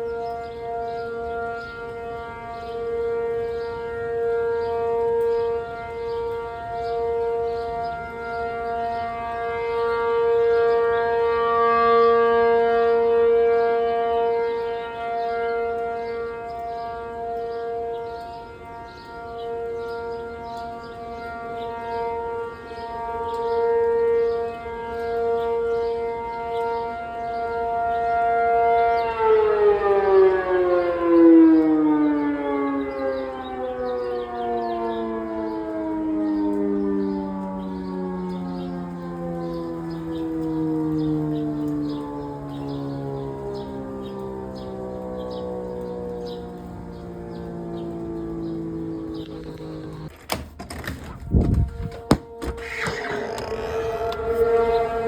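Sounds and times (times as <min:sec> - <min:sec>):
outdoor warning siren: 0:00.0 - 0:55.0.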